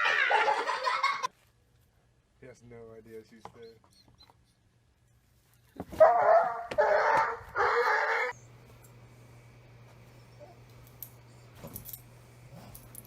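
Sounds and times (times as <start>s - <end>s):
faint steady hum: 7.8s - 13.0s.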